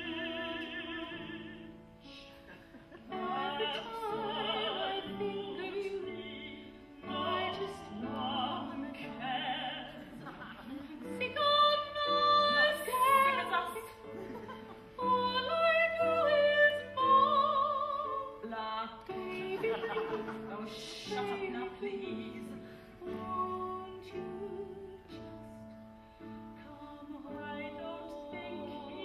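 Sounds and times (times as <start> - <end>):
operatic singing with vibrato: 3.0 - 14.2.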